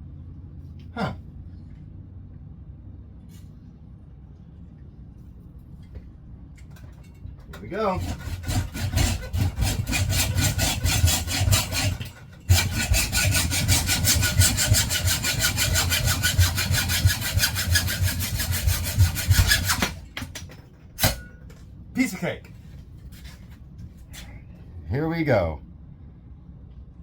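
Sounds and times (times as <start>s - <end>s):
hacksaw cutting metal tube: 7.6s - 20.4s, 21.0s - 21.3s.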